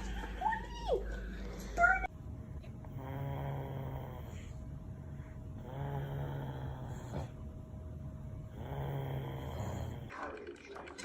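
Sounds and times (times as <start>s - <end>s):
faint steady hum: 0.0s - 10.2s
person snoring: 2.9s - 4.6s, 5.5s - 7.4s, 8.5s - 10.1s.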